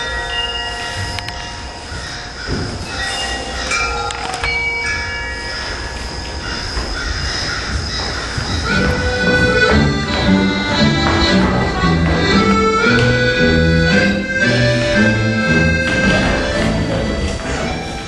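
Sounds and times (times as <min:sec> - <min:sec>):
bass line: 0:08.7 - 0:18.0
melody of held notes: 0:08.7 - 0:18.0.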